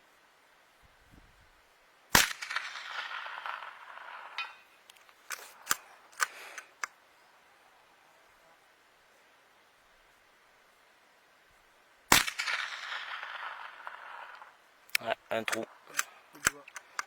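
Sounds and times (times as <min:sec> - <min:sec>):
rifle shot: 0:02.1 - 0:04.6, 0:12.1 - 0:14.6
sharp clicks: 0:04.4 - 0:07.0, 0:13.8 - 0:17.0.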